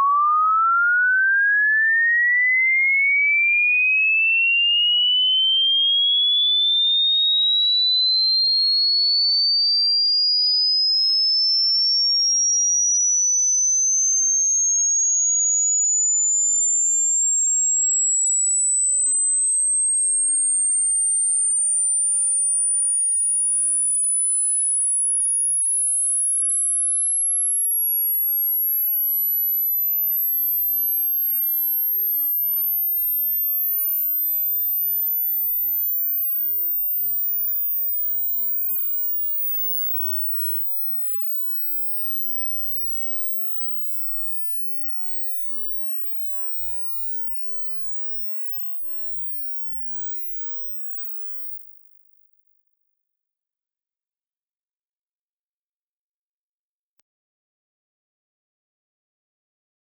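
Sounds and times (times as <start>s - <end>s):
sine tone sweeping upward: 0.0s - 2.6s, 10.2s - 51.7s.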